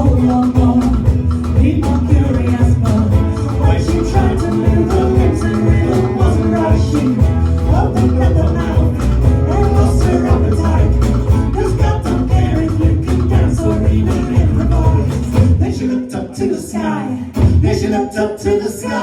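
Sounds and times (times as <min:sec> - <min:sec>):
live band playing instrumental: 0:00.0 - 0:15.6
percussion beat: 0:00.0 - 0:15.9.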